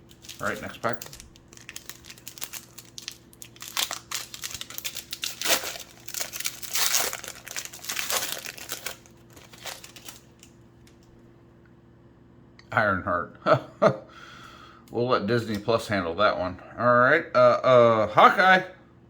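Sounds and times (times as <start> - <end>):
foil wrapper crinkling and tearing: 0.0 - 11.0.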